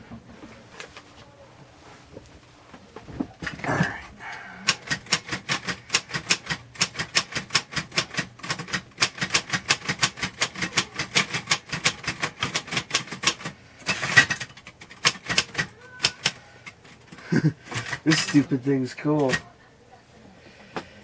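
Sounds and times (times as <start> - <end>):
typewriter key strikes: 4.7 - 19.4.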